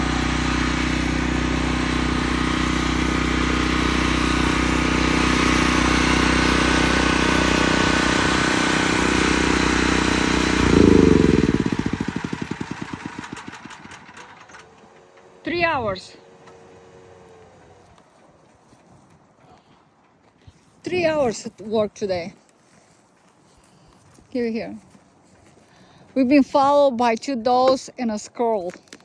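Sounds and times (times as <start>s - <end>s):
engine running and shutting off: 0.0s - 18.4s.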